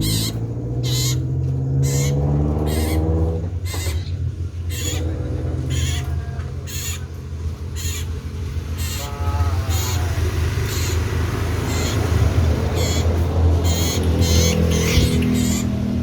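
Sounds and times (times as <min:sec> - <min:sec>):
bird singing high ringing calls: 0:00.0 - 0:03.1, 0:07.8 - 0:09.1, 0:09.7 - 0:16.0.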